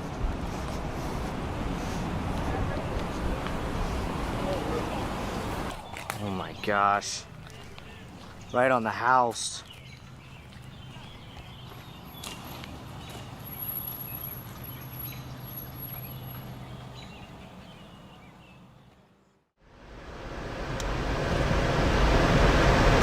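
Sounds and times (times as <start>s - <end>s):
loud rushing noise: 19.7s - 23.0s.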